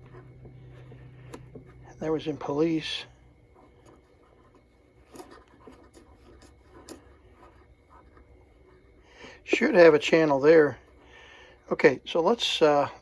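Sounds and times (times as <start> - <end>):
radio knob clicks and rubbing: 0.0 - 1.9
low steady hum: 0.0 - 13.0.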